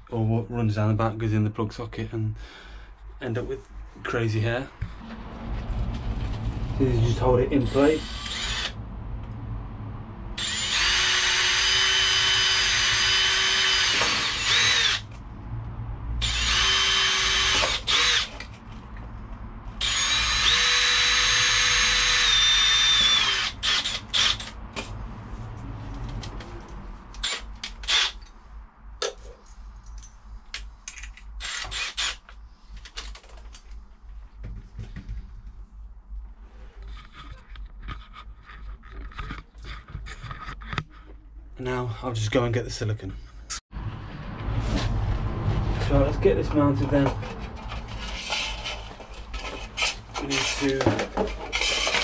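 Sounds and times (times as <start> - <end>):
power drill whining: 7.6 - 8.8, 10.4 - 15.1, 16.2 - 18.6, 19.8 - 24.6, 27.2 - 28.3, 31.4 - 32.2, 51.5 - 52.0.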